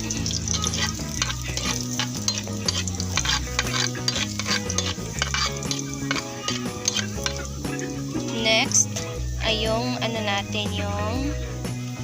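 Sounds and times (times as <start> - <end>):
garlic sizzling in oil: 0.0 - 12.0
utensil scraping a pan: 0.2 - 9.1.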